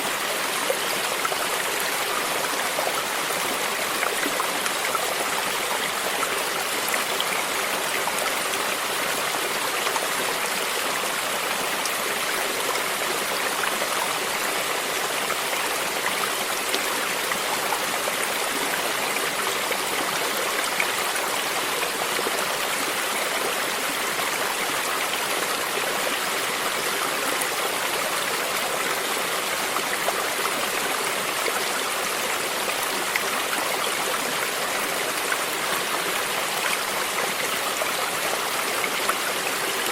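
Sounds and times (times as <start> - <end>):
stream water flowing over rocks: 0.0 - 39.9.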